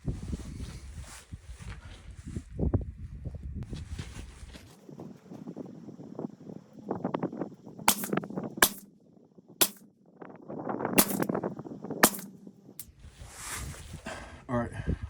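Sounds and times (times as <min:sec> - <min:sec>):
suppressed rifle shots: 0:07.9 - 0:08.8, 0:09.6 - 0:09.8, 0:11.0 - 0:11.3, 0:12.0 - 0:12.4.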